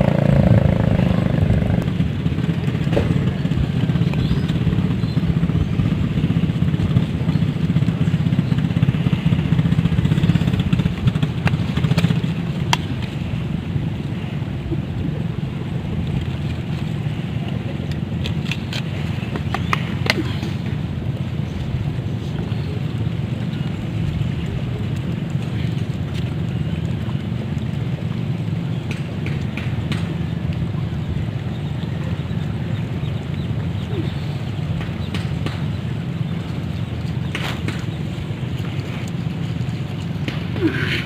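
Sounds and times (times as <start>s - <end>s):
small engine running: 0.0s - 12.6s.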